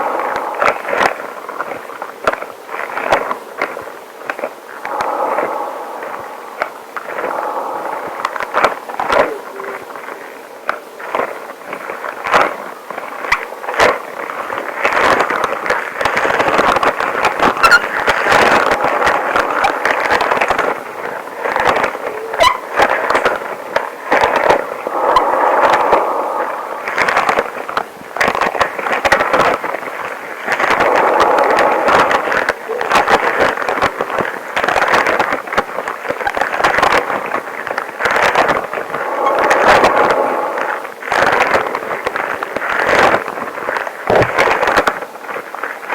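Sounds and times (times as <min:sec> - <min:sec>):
crackles and squeaks: 0:17.4 - 0:20.8, 0:21.4 - 0:27.9, 0:38.0 - 0:41.7.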